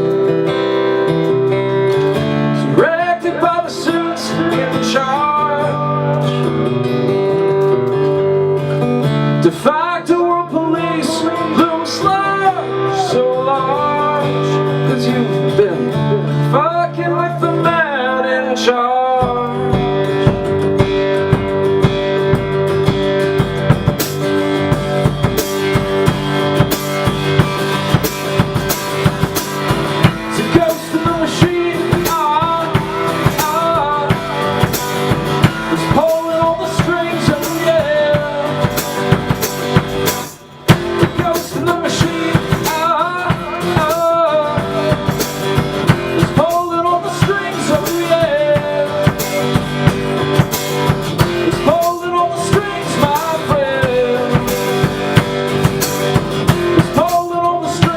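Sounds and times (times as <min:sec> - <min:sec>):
guitar: 0:00.0 - 0:57.9
drum kit beat: 0:19.2 - 0:57.9.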